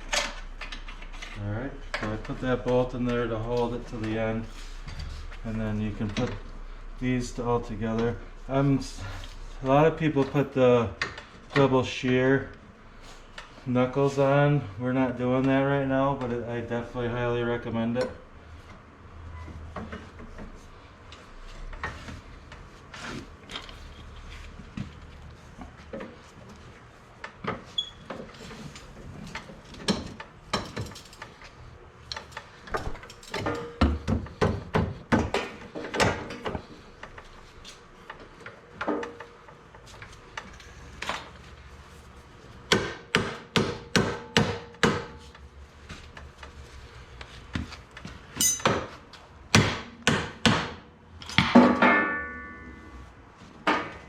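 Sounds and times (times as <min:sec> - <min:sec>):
hammer striking metal: 0:48.4 - 0:48.9, 0:51.4 - 0:53.0.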